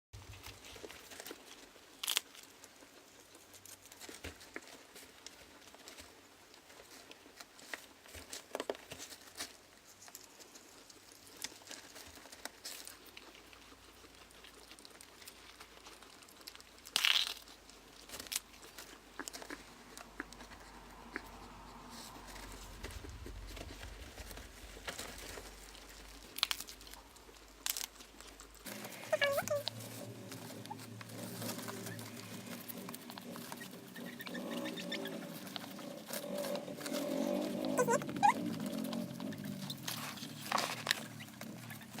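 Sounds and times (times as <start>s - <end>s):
guinea pigs eating and rustling: 0.1s - 42.0s
guinea pig squeaks: 13.9s - 42.0s.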